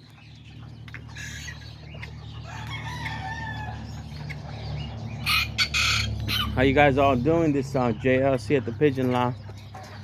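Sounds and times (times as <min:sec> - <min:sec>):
chickens clucking: 0:00.0 - 0:10.0
rooster crowing: 0:02.4 - 0:03.8.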